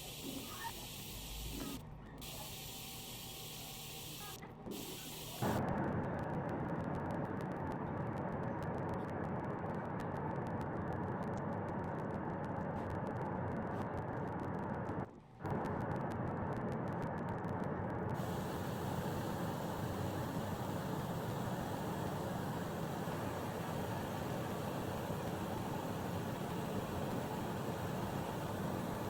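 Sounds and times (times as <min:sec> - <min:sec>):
hiss-like test noise: 0:00.0 - 0:05.7, 0:12.4 - 0:29.0
dull muffled noise: 0:00.0 - 0:29.0.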